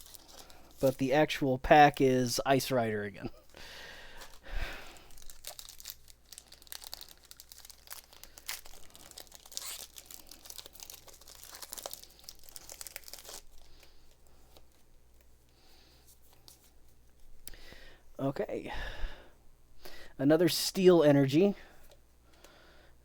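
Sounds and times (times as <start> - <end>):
card pack packaging tearing and crinkling: 0.0 - 1.4, 4.2 - 13.9.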